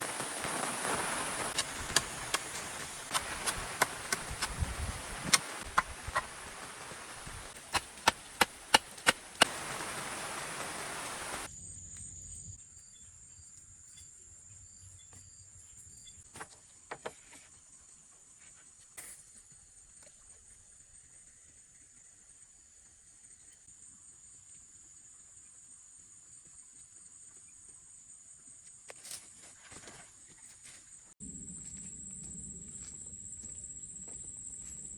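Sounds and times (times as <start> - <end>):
rain hissing: 0.0 - 11.5
insects buzzing and chirping: 0.0 - 16.3.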